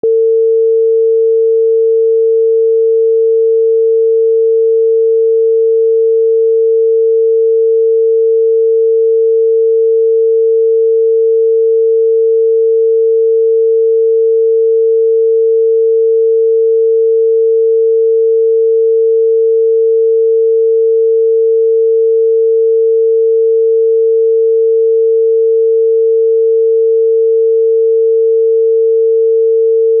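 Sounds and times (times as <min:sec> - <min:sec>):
telephone dial tone: 0:00.0 - 0:30.0.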